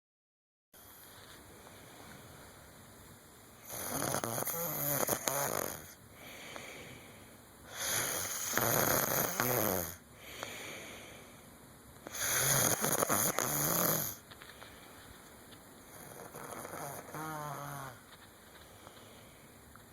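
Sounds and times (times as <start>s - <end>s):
person snoring: 3.7s - 6.7s, 7.7s - 10.6s, 12.1s - 14.2s, 15.9s - 18.0s.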